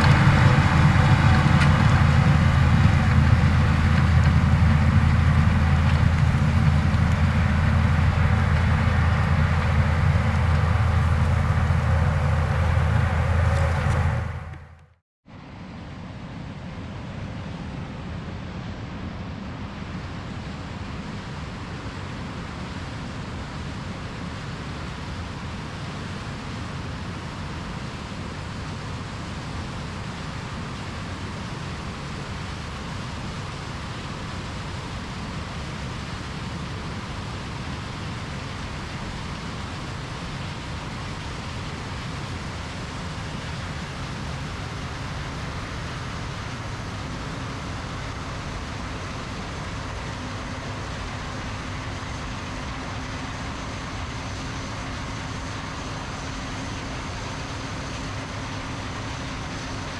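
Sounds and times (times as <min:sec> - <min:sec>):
machinery hissing: 0:00.0 - 0:14.8
combine harvester engine rumble: 0:00.0 - 0:15.0, 0:37.6 - 0:59.9.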